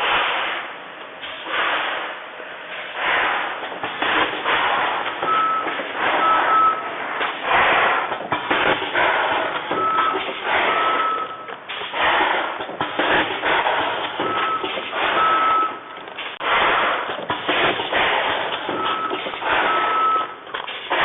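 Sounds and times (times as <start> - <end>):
packing machine cycling: 3.0 - 21.0
short high beeps: 5.2 - 6.9, 9.7 - 11.5, 14.2 - 15.9, 18.7 - 20.4.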